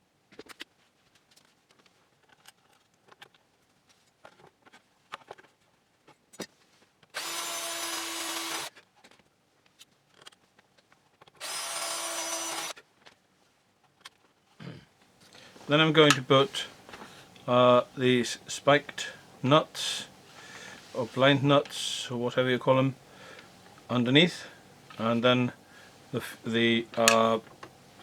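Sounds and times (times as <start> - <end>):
power drill drilling into wood: 7.2 - 8.7, 11.4 - 12.7
parts being handled clicks: 16.0 - 17.5, 26.9 - 27.8.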